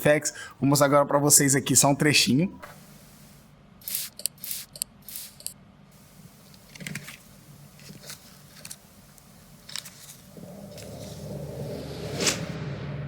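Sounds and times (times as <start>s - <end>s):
steady low hum: 0.0s - 13.0s
short mechanical clicks: 3.8s - 5.6s.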